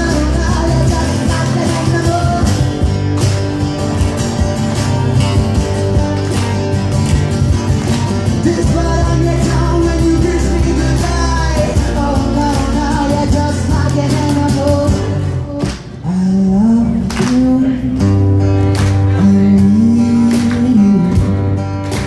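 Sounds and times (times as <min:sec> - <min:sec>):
person singing: 0:00.0 - 0:02.9, 0:08.4 - 0:21.5
strummed acoustic guitar: 0:00.0 - 0:22.0.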